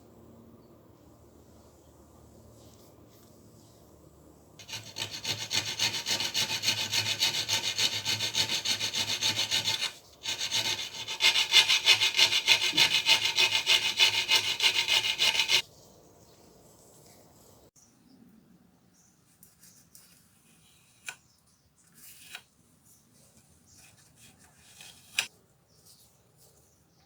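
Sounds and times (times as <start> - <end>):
rubbing strokes on a screwdriver: 4.6 - 15.6.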